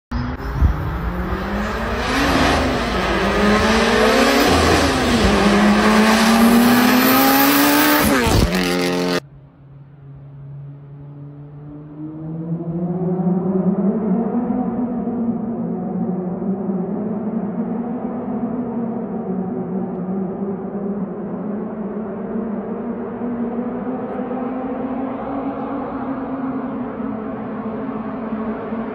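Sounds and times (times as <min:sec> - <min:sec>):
car engine droning under load: 0:00.1 - 0:28.9
car engine revving hard: 0:00.2 - 0:09.2.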